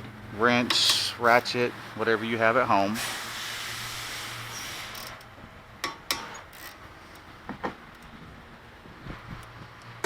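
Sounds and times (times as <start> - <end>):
hand tool clinking on steel nuts: 0.6 - 1.1.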